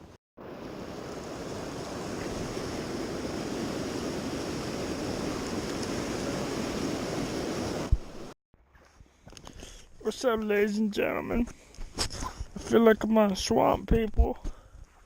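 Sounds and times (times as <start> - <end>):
stream water rushing over rocks: 0.4 - 8.4.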